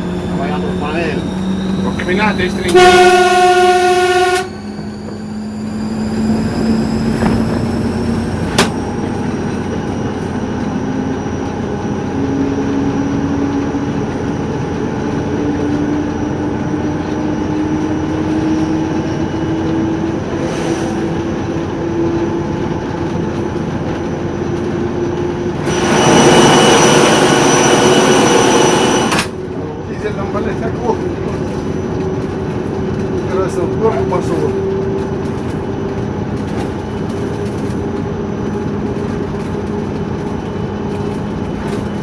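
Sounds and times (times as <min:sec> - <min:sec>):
turbocharger whistle: 0:00.0 - 0:08.9
diesel locomotive engine: 0:00.0 - 0:42.0.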